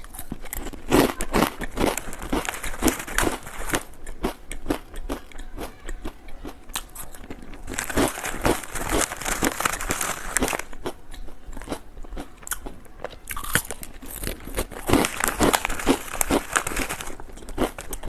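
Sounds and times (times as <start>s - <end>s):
chips crunched and chewed: 0.0s - 18.0s.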